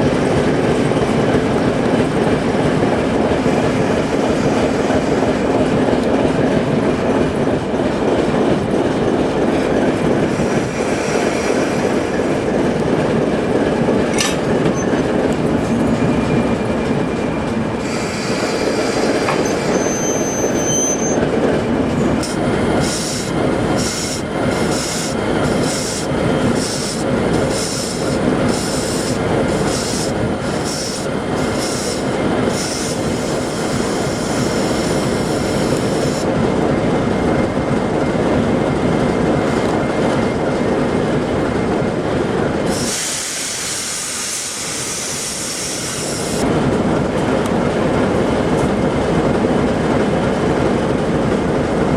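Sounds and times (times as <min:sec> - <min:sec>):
train rumbling on rails: 0:00.0 - 0:51.9
high-pitched wheel squeal: 0:17.8 - 0:21.2.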